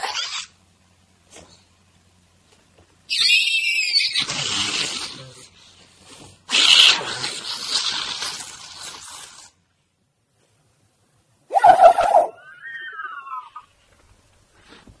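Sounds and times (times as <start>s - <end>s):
person making squeaky call: 0.0s - 0.5s, 3.1s - 5.2s
person making harsh blurt: 4.2s - 5.5s, 6.5s - 9.6s.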